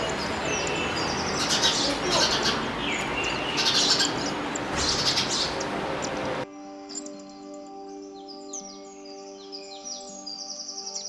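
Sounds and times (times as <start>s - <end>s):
steady background hiss: 0.0s - 6.4s
small birds chirping: 0.0s - 11.0s.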